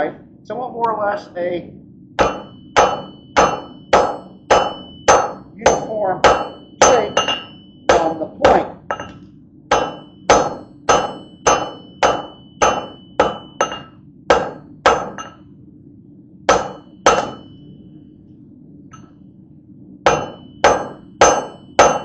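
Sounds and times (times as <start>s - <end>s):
hammer striking steel on anvil: 2.2s - 15.4s, 16.5s - 17.5s, 20.1s - 22.0s.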